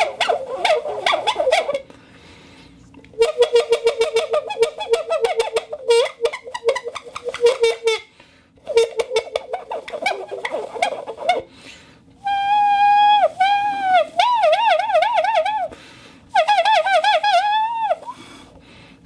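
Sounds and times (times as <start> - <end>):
bottle whistle trilling and warbling: 0.0 - 1.8, 8.7 - 11.5, 12.2 - 15.7, 16.4 - 18.2.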